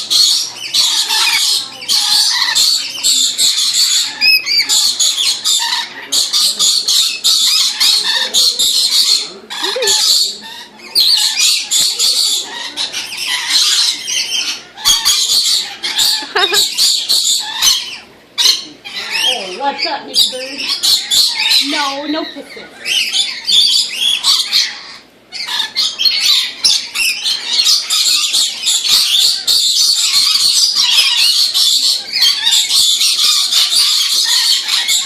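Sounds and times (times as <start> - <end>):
parrots squawking and screeching: 0.0 - 35.0.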